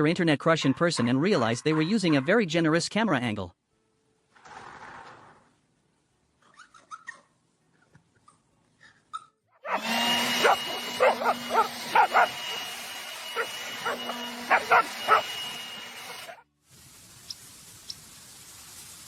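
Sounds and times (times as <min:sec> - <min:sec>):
dog barking and yipping: 0:09.5 - 0:16.4
loud machine hum: 0:09.7 - 0:16.4.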